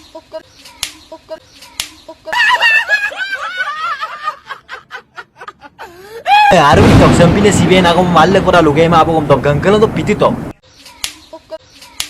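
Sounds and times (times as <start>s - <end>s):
high-pitched squeaky laugh: 2.0s - 6.0s, 10.9s - 12.0s.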